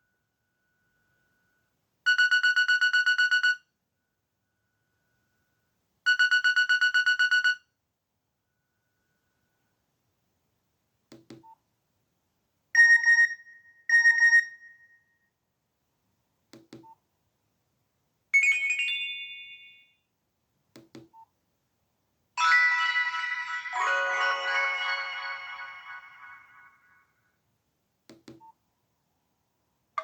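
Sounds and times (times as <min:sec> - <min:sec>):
multi-note phone ringtone: 0:22.4 - 0:27.0.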